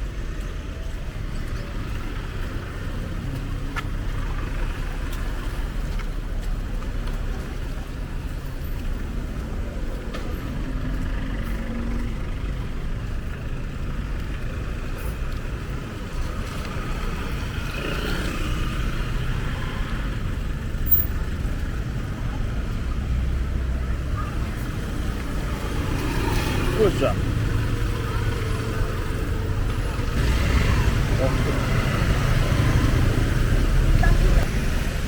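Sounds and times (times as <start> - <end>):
road traffic rumble: 0.0 - 35.0.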